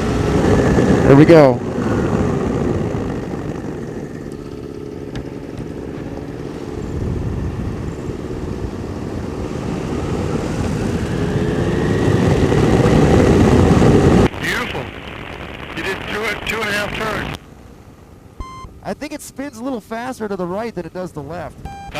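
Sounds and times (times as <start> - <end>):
wind noise: 0.0 - 17.4
two-stroke engine and propeller: 0.0 - 21.9.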